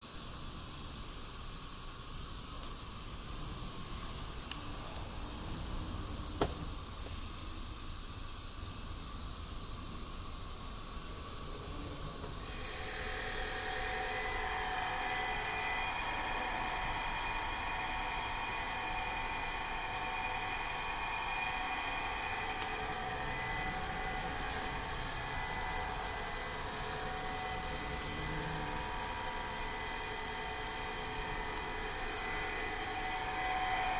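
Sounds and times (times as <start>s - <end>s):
roller conveyor whining: 3.8s - 7.2s, 11.8s - 33.9s.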